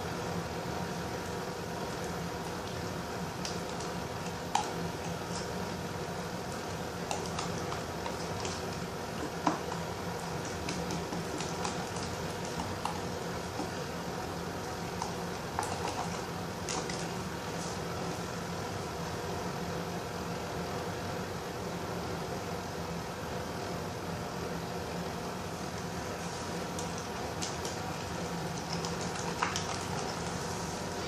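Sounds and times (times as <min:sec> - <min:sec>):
steady background hum: 0:00.0 - 0:31.0
slime squelching: 0:01.9 - 0:18.2, 0:26.1 - 0:31.0.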